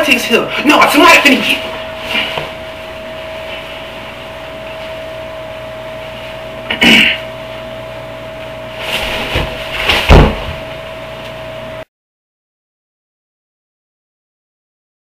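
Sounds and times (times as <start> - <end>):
electrical hum: 0.0 - 11.9
loud bangs and thumps: 9.2 - 10.7.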